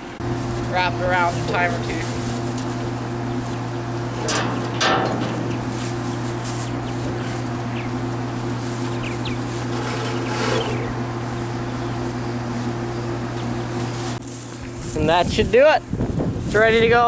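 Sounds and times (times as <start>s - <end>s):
machine engine idling: 0.0s - 14.2s.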